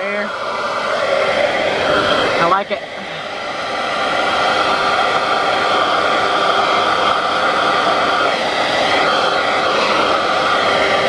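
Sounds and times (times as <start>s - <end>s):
fan blowing air with steady hum: 0.0s - 11.0s.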